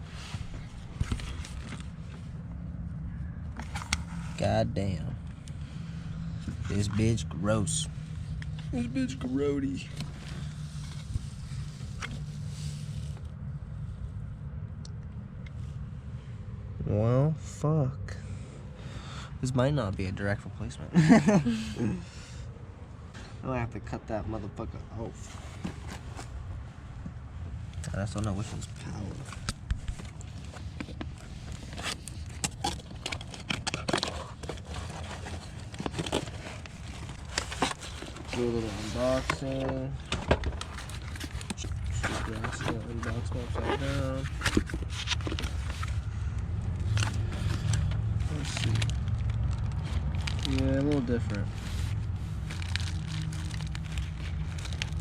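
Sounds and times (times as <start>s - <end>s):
low background hum: 0.0s - 55.0s
steady low rumble: 0.0s - 55.0s
clicks taps and crinkling of parts: 29.2s - 38.4s, 44.2s - 46.0s.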